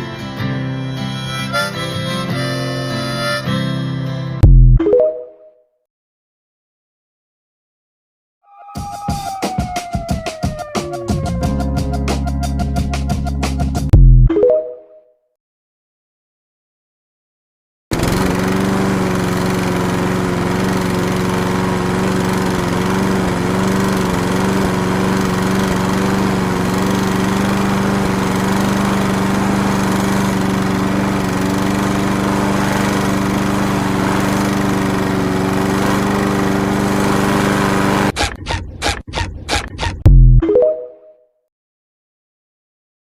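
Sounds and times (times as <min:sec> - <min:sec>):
small engine running: 0:17.9 - 0:38.2.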